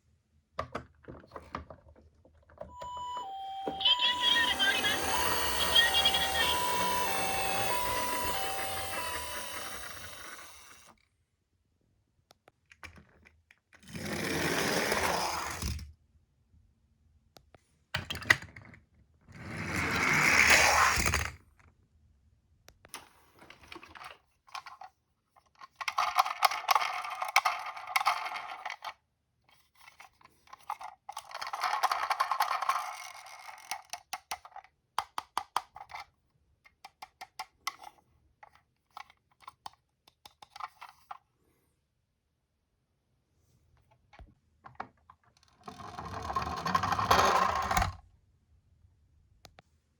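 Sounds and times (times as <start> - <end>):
toy cars rolling and rattling: 2.8 - 10.9, 13.8 - 15.8, 19.4 - 21.4, 23.4 - 29.0, 29.7 - 34.7, 45.4 - 48.0.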